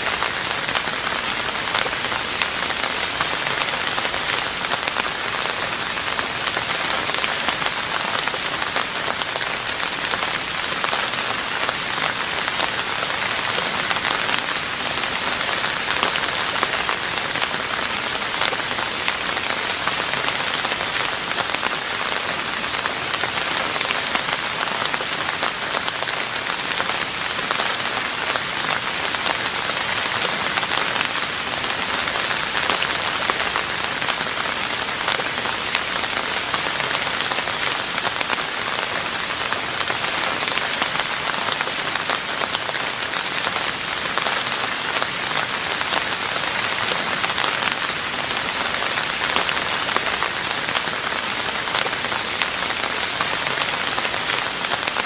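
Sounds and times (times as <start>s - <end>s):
rain on a roof: 0.0s - 55.0s.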